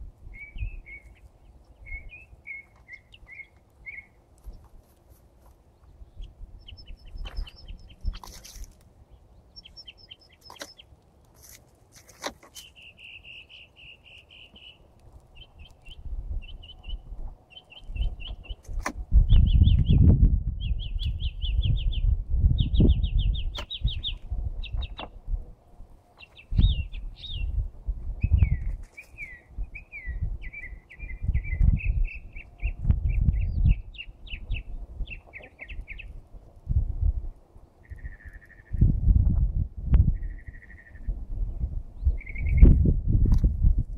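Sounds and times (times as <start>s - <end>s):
songbird singing: 0.0s - 11.5s, 12.2s - 36.5s, 37.4s - 39.0s, 39.9s - 42.9s
low rumbling noise: 29.4s - 43.9s.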